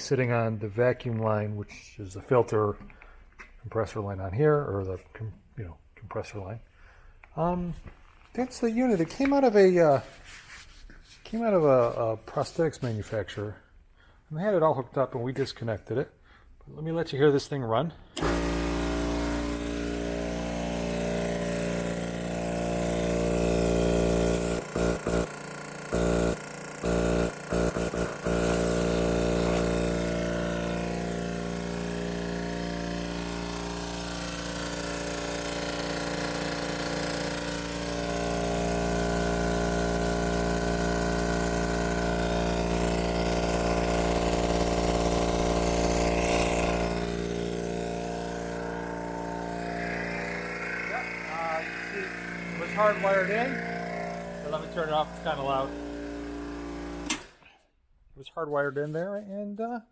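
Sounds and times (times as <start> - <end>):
vacuum pump humming: 18.1 - 57.4.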